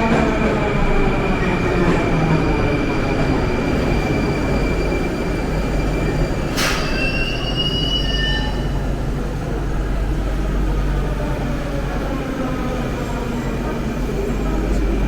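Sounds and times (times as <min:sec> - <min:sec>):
train rumbling: 0:00.0 - 0:15.0
metallic wheel squeal: 0:04.3 - 0:08.9.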